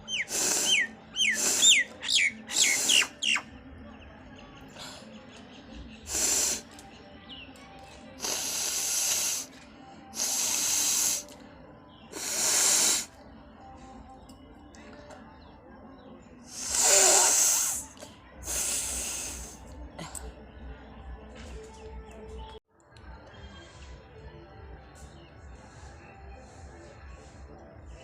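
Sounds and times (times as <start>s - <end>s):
person blowing nose: 0.2s - 0.8s, 1.4s - 1.7s, 6.1s - 6.6s, 8.2s - 9.5s, 10.2s - 11.3s, 12.2s - 13.1s, 16.6s - 19.6s.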